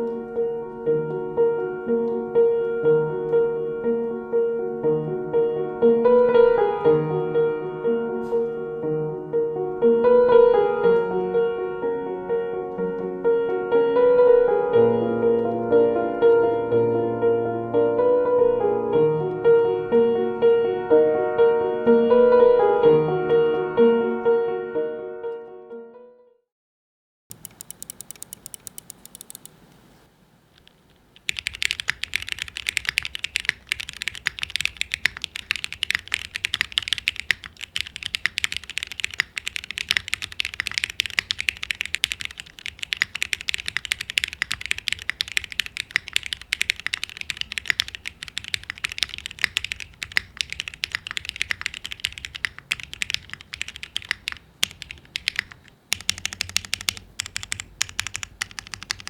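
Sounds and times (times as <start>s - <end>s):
fast mechanical keyboard typing: 27.3s - 29.6s, 30.6s - 59.0s.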